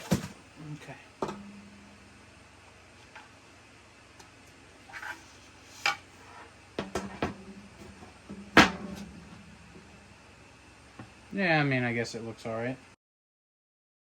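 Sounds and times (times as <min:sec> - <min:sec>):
parts knocking and clattering: 0:00.0 - 0:00.4, 0:01.2 - 0:01.6, 0:06.8 - 0:10.2.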